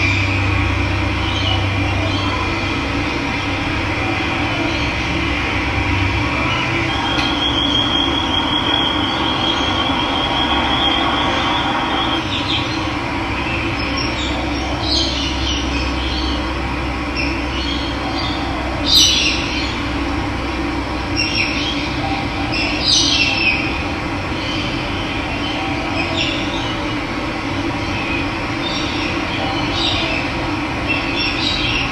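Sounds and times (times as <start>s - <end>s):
birds chirping: 0.0s - 20.1s.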